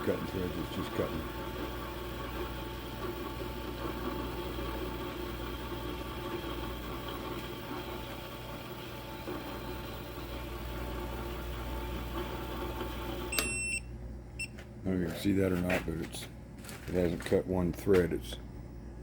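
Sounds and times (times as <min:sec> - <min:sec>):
metal lathe humming: 0:00.0 - 0:13.3.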